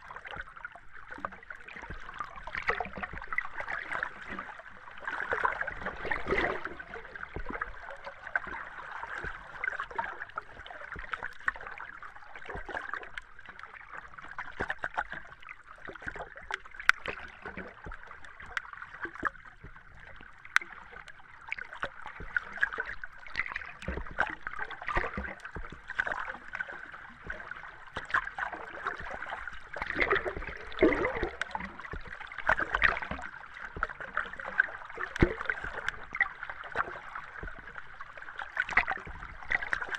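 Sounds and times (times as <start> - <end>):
muffled underwater water wash: 0.0 - 39.9
underwater bubbling: 0.0 - 39.9.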